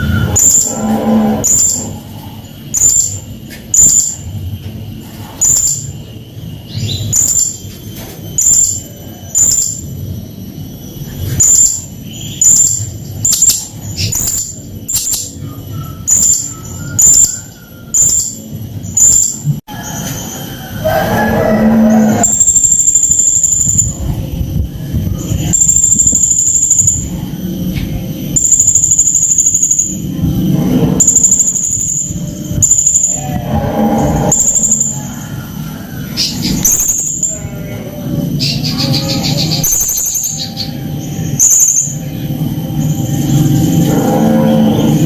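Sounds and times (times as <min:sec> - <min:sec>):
parrot chirping: 0:01.4 - 0:04.3, 0:28.3 - 0:30.1, 0:38.3 - 0:42.1.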